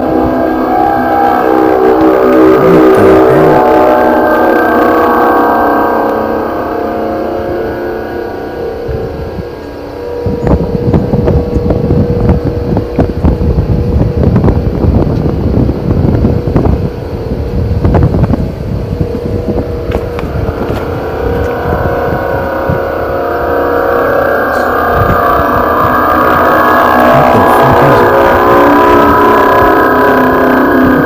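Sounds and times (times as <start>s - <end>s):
higher droning tone: 0.0s - 31.0s
low droning rumble: 0.0s - 31.0s
wind buffeting microphone: 8.8s - 31.0s.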